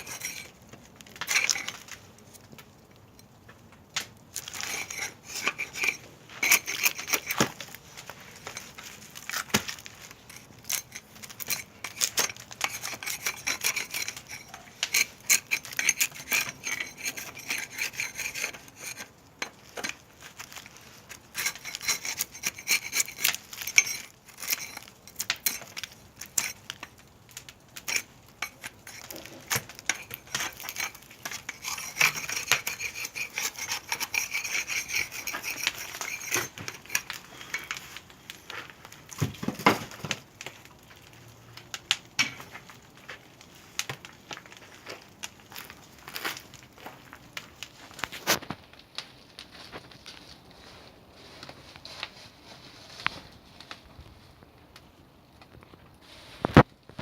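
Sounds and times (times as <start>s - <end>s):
wood scraping and rubbing: 0.0s - 2.5s, 4.4s - 26.9s, 27.8s - 41.1s.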